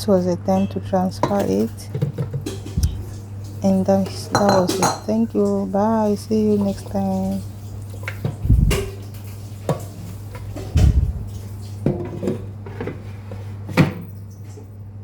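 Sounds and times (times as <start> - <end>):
steady low hum: 0.0 - 15.0
bowls and utensils clattering: 0.5 - 14.7.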